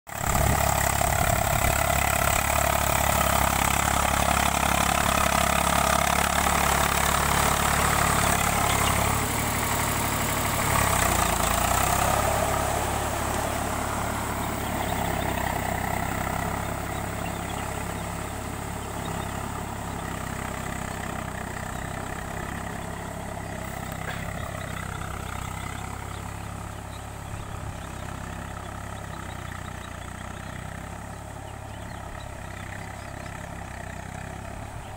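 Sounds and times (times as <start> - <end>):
tractor diesel engine running: 0.1 - 34.9.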